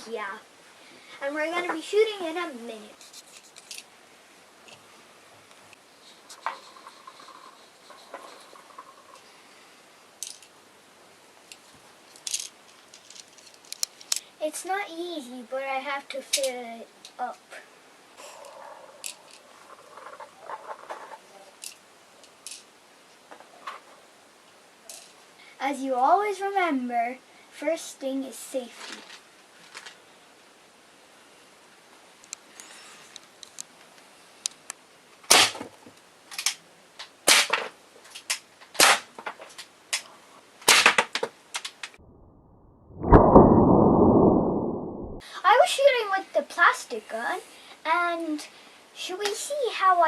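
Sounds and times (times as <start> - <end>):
bbs rattling into a magazine: 12.1 - 14.2
airsoft pistol shots: 35.3 - 35.6
loud rushing noise: 43.0 - 45.2.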